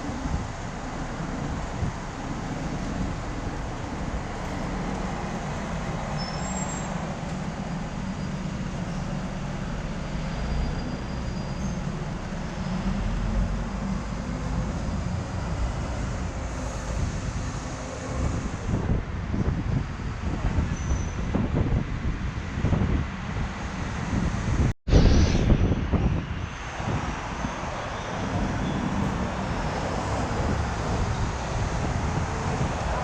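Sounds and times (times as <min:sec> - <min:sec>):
bus engine rumble: 0:00.0 - 0:33.0
road and traffic noise: 0:00.0 - 0:33.0
faint high squeaks: 0:06.2 - 0:06.9.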